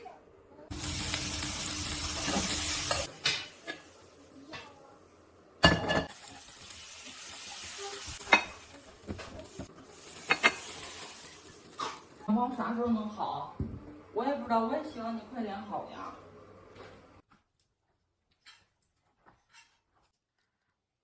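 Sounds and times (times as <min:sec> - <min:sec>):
food sizzling in hot oil: 0:00.7 - 0:04.6, 0:05.6 - 0:12.3.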